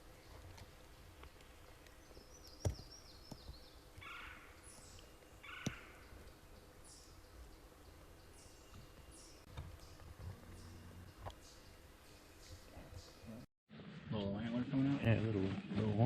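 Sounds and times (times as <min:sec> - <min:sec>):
faint woodland birdsong: 0:00.0 - 0:13.4
raspy bird calls: 0:02.2 - 0:07.3.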